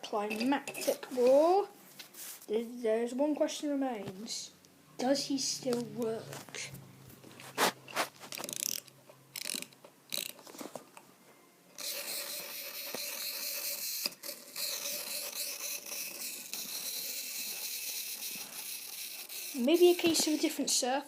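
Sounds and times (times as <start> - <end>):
spring motor whirring: 7.9 - 10.4, 11.8 - 20.4
clockwork key winding clicks: 8.4 - 10.4.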